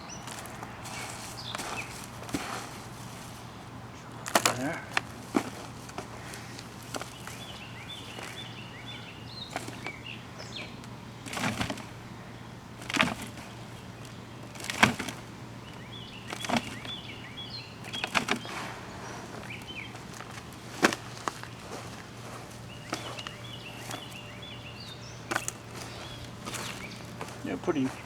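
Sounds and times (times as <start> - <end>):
birds chirping: 0.0 - 28.0
hands sifting through soil: 0.2 - 12.2, 17.8 - 28.0.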